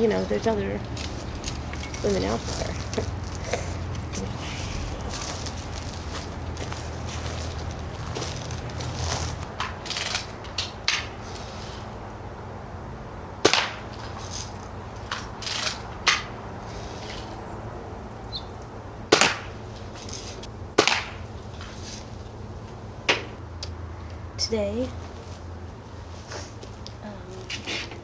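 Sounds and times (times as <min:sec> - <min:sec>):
rifle action clicks and rattles: 0:09.6 - 0:10.8
rifle shots cracking: 0:20.8 - 0:21.2.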